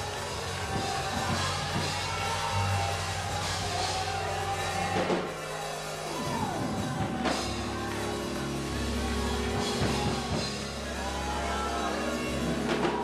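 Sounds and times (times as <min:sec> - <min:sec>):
drum kit with cymbals: 0:00.0 - 0:08.3
sustained keyboard chords: 0:00.0 - 0:13.0.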